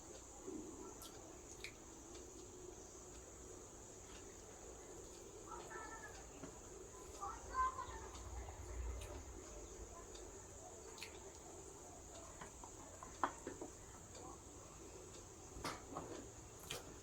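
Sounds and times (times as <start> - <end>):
steady high hiss: 0.0 - 17.0
faint pitched sounds: 4.3 - 13.1
chewing clicks: 10.9 - 11.4.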